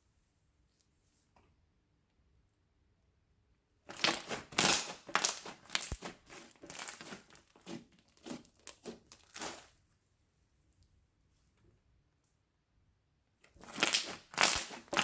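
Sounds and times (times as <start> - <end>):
hands squishing slime: 3.9 - 9.8, 13.5 - 15.0.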